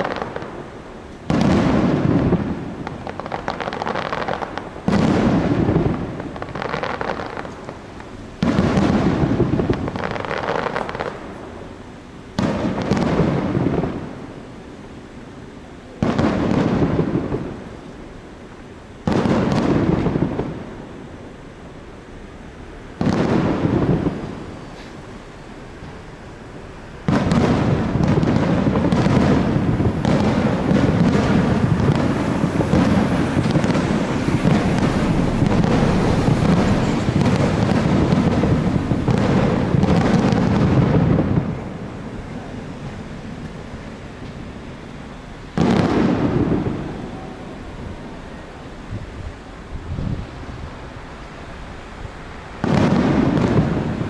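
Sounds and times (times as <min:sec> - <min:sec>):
firework shells booming: 0:00.0 - 0:11.4, 0:12.3 - 0:14.2, 0:16.0 - 0:17.8, 0:19.0 - 0:20.8, 0:23.0 - 0:25.0, 0:27.0 - 0:44.4, 0:45.4 - 0:47.5, 0:52.6 - 0:54.0.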